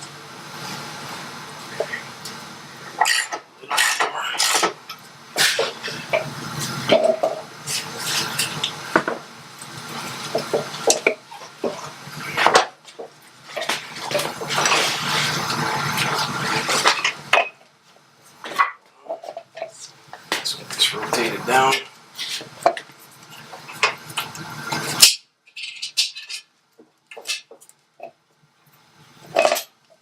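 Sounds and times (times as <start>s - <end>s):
rubbing and scraping: 13.4s - 17.3s, 22.2s - 22.7s.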